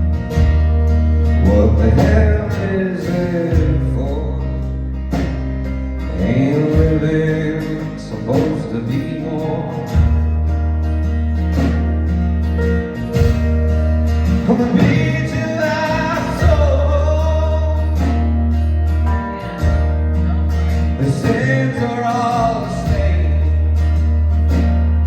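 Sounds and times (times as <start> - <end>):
live band playing: 0.0 - 25.0
person singing: 1.4 - 4.4, 14.4 - 18.2, 20.8 - 23.8.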